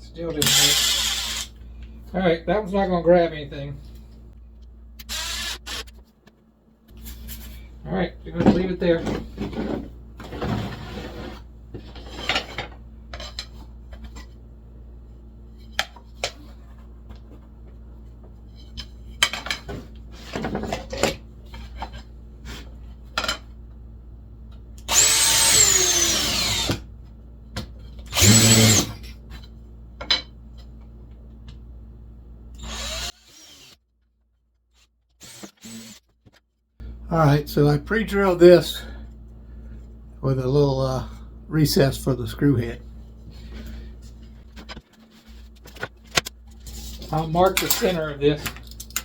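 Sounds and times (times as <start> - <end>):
steady low hum: 0.0 - 33.1, 36.8 - 49.0
power drill motor whine: 0.4 - 1.5, 5.0 - 5.9, 24.9 - 26.8, 28.1 - 29.0, 32.6 - 33.8, 35.2 - 36.0.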